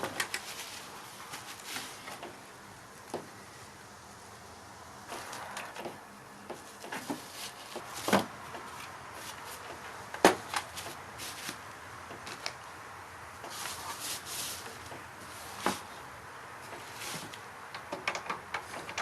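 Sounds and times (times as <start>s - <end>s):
hard objects clicking and knocking: 16.7s - 19.0s.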